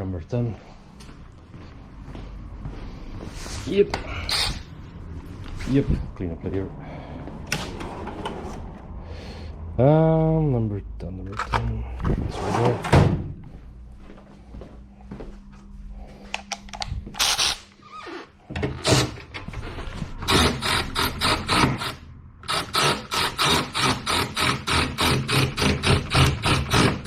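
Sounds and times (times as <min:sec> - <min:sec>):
hand ratchet clicking: 0:20.3 - 0:27.0.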